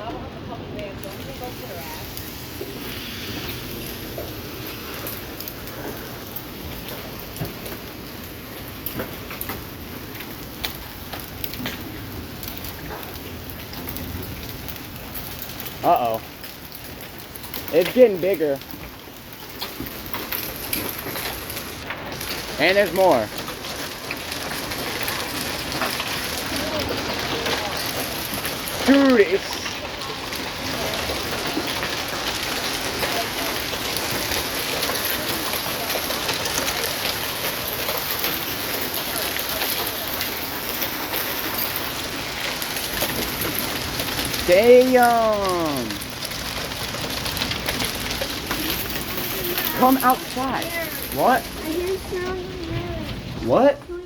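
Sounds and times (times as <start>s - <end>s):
hailstones hitting: 0.0s - 54.0s
rain pouring: 0.0s - 54.0s.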